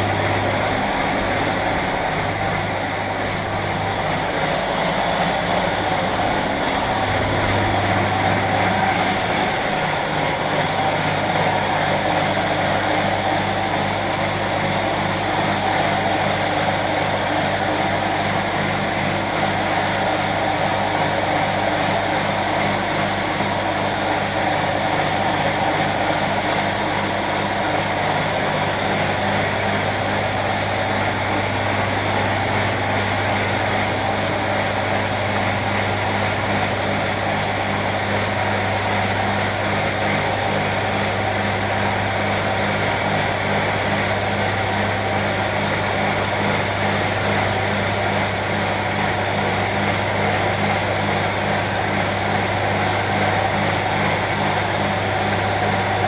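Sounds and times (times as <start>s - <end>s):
electric machine humming: 0.0s - 37.4s.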